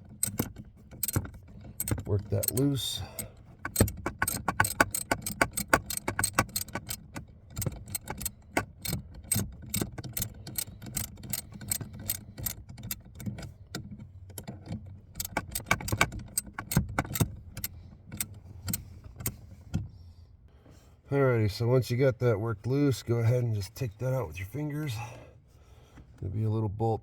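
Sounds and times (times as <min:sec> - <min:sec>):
socket wrench ratchet clicking: 0:00.2 - 0:13.5, 0:14.4 - 0:19.4.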